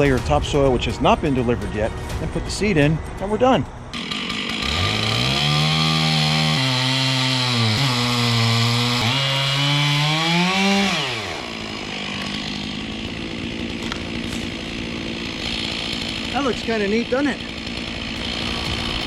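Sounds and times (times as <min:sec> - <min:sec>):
chainsaw cutting wood: 0:03.9 - 0:19.0.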